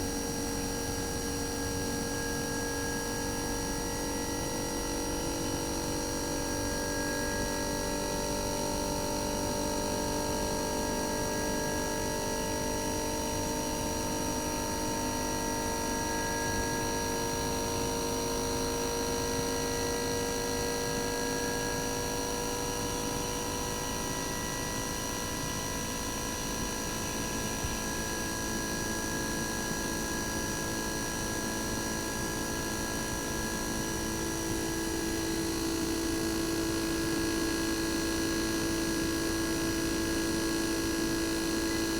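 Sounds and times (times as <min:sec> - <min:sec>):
compressor humming and whining: 0:00.0 - 0:41.9.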